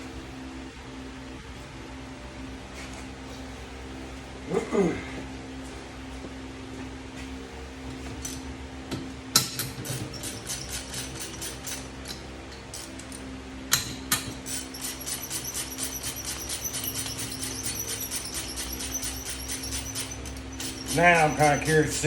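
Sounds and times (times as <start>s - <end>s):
steady hum: 0.0s - 22.0s
socket ratchet clicking: 13.7s - 21.7s.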